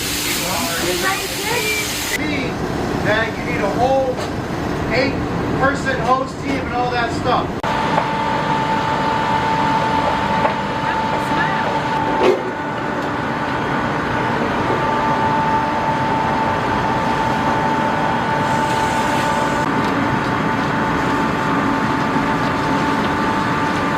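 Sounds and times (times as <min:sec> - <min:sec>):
high steady whine: 0:00.0 - 0:23.9
ship machinery hum: 0:00.0 - 0:23.9.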